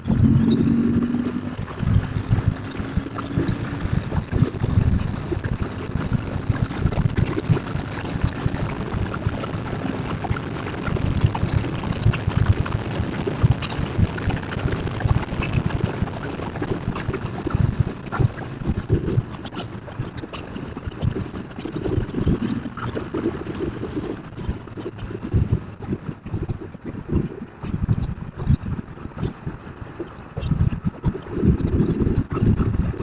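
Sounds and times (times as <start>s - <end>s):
motorcycle engine at speed: 0.0s - 13.0s
wind buffeting microphone: 0.0s - 33.0s.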